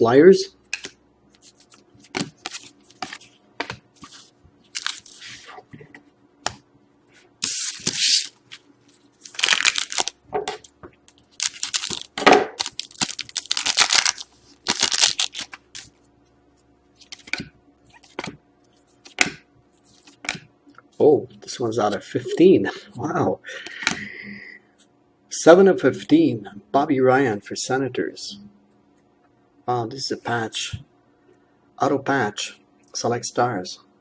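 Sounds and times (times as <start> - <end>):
faint steady hum: 0.0 - 34.0
card packaging rustling and crinkling: 4.0 - 5.5, 7.4 - 10.2, 11.2 - 16.0.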